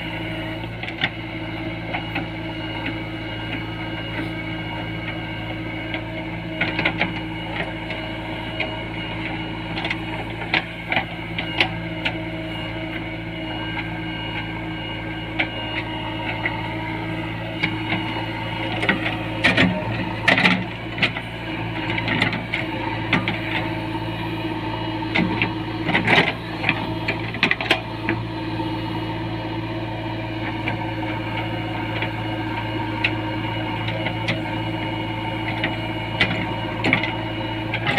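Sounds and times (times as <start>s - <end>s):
diesel engine running: 0.0s - 37.9s
knocks and clanks of digging gear: 17.4s - 23.8s.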